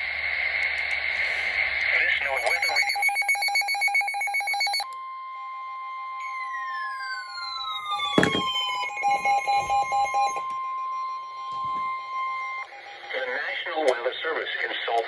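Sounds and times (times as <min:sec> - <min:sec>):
steady warning alarm tone: 0:02.1 - 0:15.0
sharp thump: 0:08.2 - 0:08.5.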